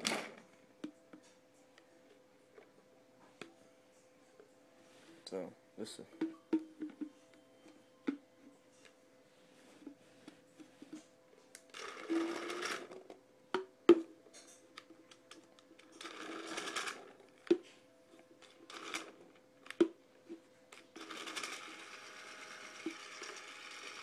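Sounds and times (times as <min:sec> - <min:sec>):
motor whirring: 0:21.0 - 0:24.0.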